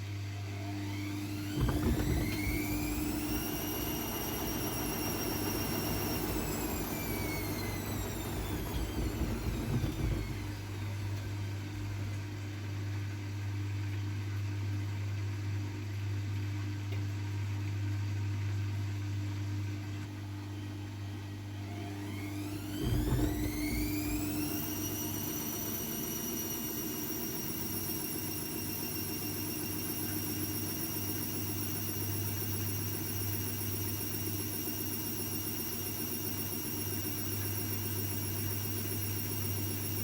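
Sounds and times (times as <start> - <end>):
washing machine low hum: 0.0 - 40.0
washing machine motor whine: 0.0 - 40.0.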